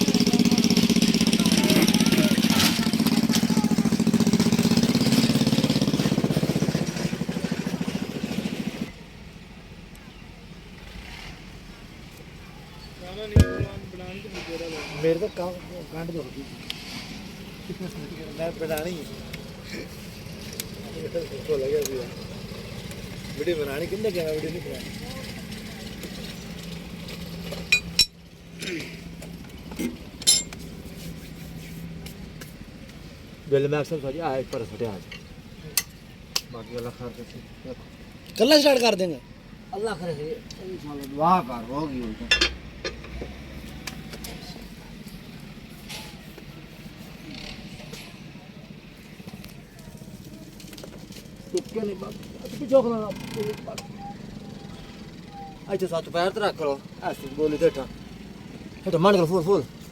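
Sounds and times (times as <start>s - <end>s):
metal-on-metal clinks: 13.4s - 14.0s, 30.2s - 30.6s
heavy oil engine running: 17.2s - 30.9s.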